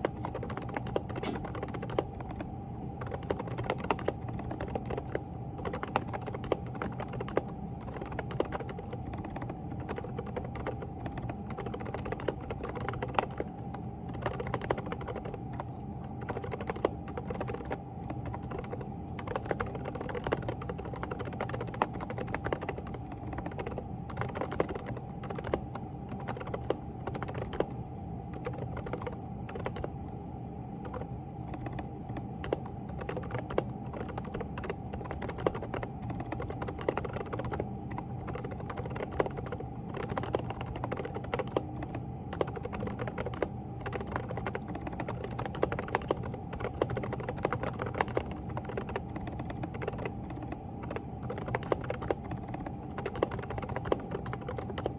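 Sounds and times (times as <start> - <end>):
soft keyboard typing: 0.0 - 54.9
steady hum: 0.0 - 54.9.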